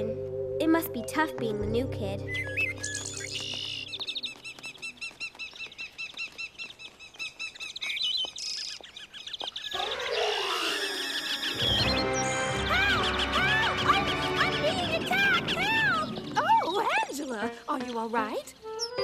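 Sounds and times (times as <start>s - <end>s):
overlapping bird calls: 2.2s - 19.0s.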